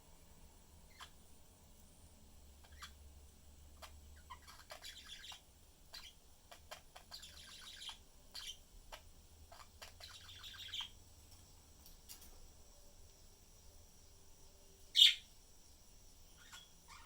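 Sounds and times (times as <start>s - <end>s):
budgerigars chirping: 0.9s - 1.2s, 2.6s - 3.0s, 3.8s - 11.0s, 15.0s - 15.2s, 16.4s - 17.0s.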